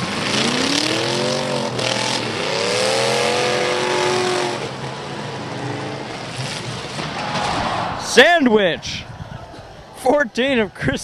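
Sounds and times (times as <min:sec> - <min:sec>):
car engine revving: 0:00.0 - 0:07.0.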